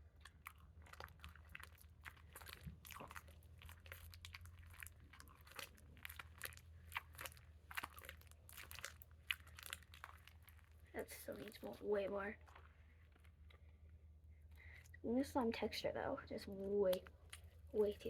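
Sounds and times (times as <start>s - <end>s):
slime squelching and crackling: 0.0s - 18.0s.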